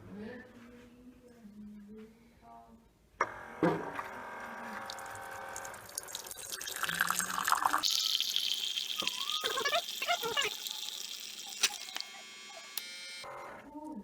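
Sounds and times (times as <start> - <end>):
coffee maker humming: 5.7 - 13.2
hot water hissing into cup: 5.8 - 12.8.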